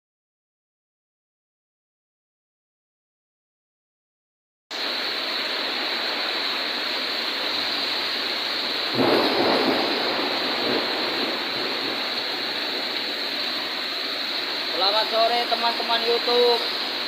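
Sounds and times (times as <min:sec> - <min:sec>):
heavy rain pouring: 0:04.7 - 0:17.0.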